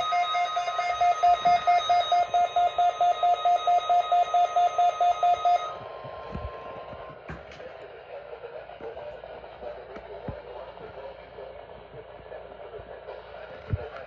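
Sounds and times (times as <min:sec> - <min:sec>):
rapid alarm beeping: 0:00.0 - 0:05.8
faint steady warning tone: 0:00.0 - 0:07.2.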